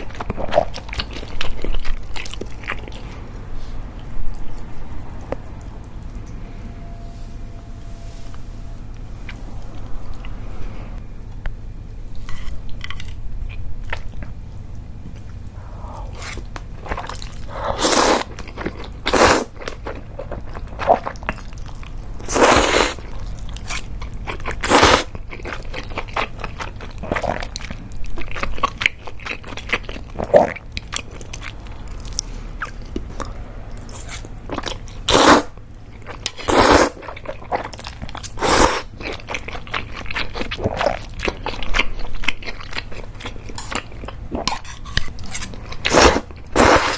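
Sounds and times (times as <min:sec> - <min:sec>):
wet chewing: 0:00.0 - 0:06.4, 0:15.0 - 0:46.9
slurping noodles: 0:15.6 - 0:19.5, 0:22.3 - 0:23.1, 0:33.9 - 0:35.5, 0:36.4 - 0:37.6, 0:38.3 - 0:38.9, 0:44.4 - 0:46.9.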